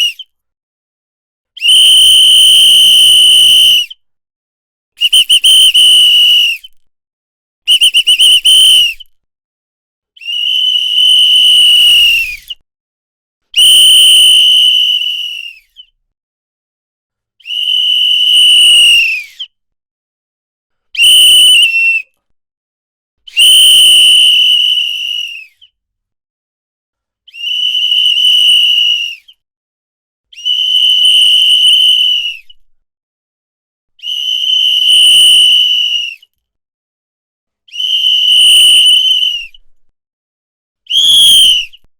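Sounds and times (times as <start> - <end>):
whistle blasts: 1.6 - 4.0, 5.0 - 6.8, 7.7 - 9.1, 10.2 - 12.5, 13.6 - 15.6, 17.4 - 19.4, 21.0 - 22.1, 23.3 - 25.5, 30.4 - 32.5, 34.0 - 36.2, 37.7 - 39.6, 40.9 - 41.8.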